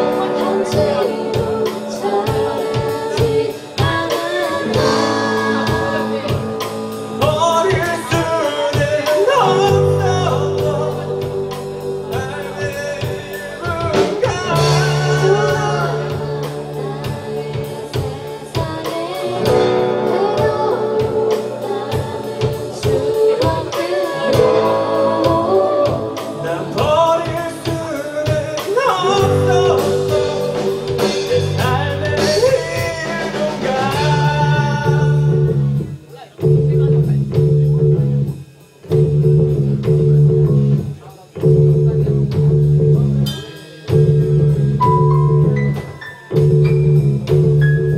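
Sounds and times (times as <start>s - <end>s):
lead vocal: 0.0s - 37.9s
guitar: 0.0s - 47.9s
steady drum beat: 0.0s - 47.9s
sustained bass notes: 0.0s - 47.9s.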